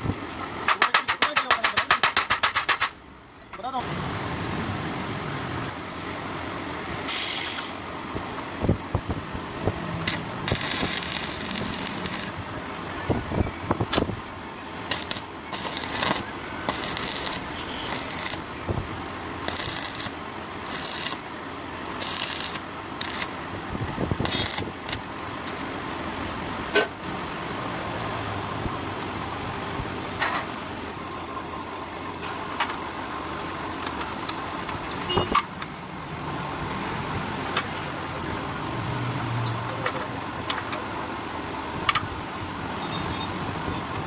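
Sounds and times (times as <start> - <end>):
sharp metal clicks: 0.6 - 3.0, 14.9 - 18.4
arc welding crackling: 9.6 - 12.6, 13.2 - 25.6.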